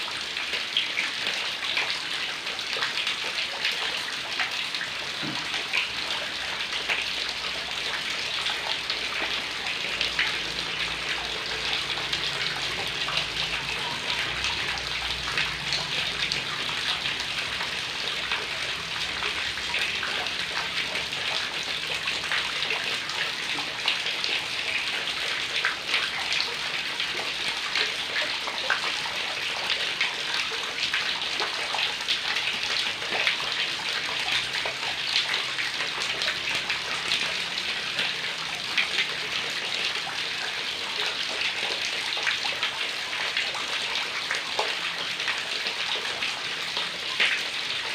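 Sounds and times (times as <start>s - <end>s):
heavy rain falling: 4.7s - 29.6s.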